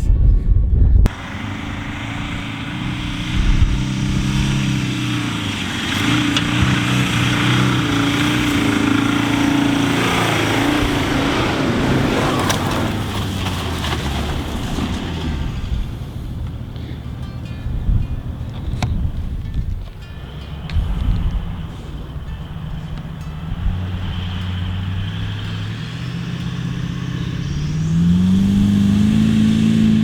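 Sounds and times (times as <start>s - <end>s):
wind hiss: 1.1s - 13.4s
engine running under load: 1.1s - 30.0s.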